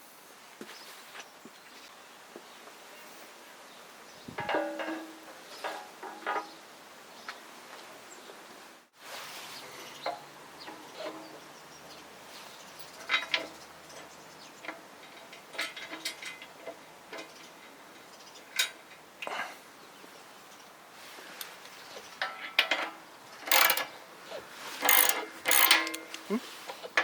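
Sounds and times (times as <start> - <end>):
metallic clicks and clinks: 22.2 - 24.0, 24.8 - 27.0.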